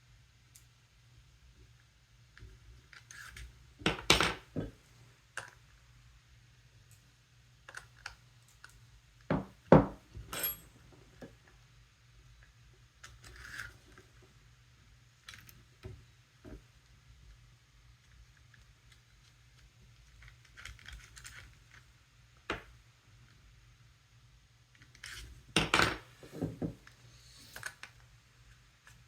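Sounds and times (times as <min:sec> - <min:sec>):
metal tools clattering on surface: 0:10.2 - 0:10.8.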